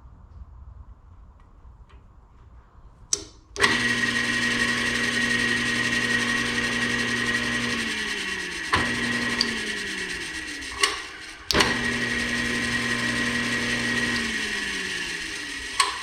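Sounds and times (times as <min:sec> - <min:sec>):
band saw motor humming and whining: 0:03.6 - 0:16.0.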